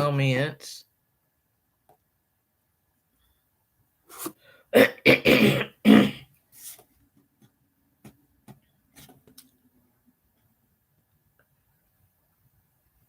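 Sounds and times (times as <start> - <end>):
woman coughing: 4.8 - 6.3.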